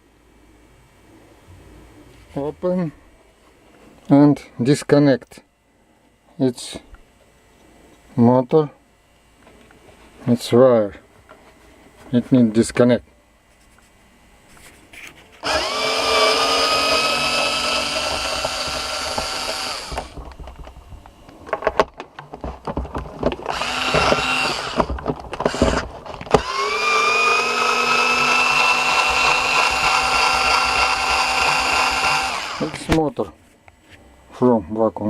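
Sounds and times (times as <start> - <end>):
electric drill-driver whirring: 15.4 - 20.2, 23.4 - 33.0.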